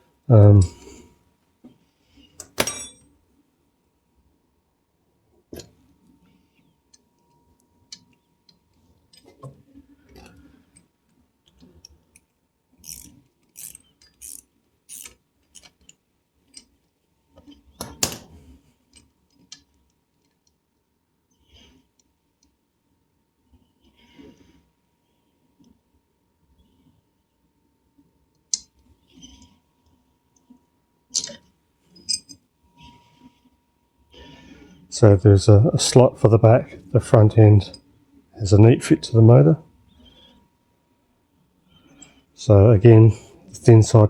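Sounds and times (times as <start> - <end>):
ratchet clicking: 12.8 - 15.7.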